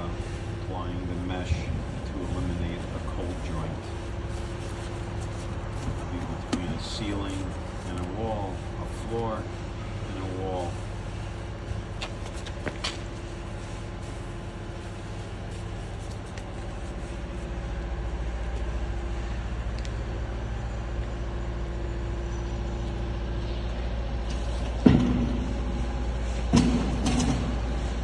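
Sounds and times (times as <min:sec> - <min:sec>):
engine rumbling: 0:00.0 - 0:28.0
loud clunk: 0:24.7 - 0:25.8, 0:26.4 - 0:27.8.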